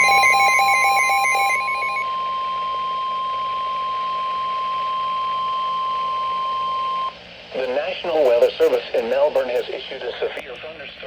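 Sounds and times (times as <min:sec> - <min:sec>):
high-pitched alert tone: 0:00.0 - 0:02.0
warbling electronic pattern: 0:00.0 - 0:02.0.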